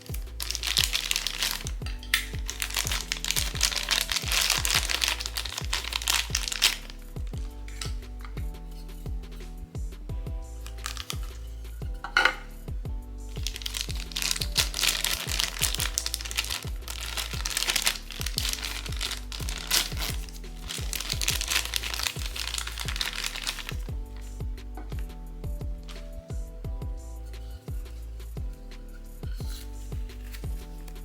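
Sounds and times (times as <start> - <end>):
plastic packaging crinkling: 0.0 - 8.0, 10.6 - 11.4, 13.4 - 24.3, 29.4 - 31.0
background music with bass line: 0.0 - 31.0.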